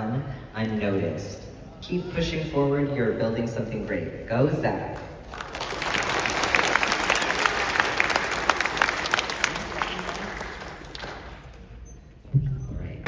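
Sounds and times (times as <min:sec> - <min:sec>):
audience applauding: 0:05.0 - 0:11.8.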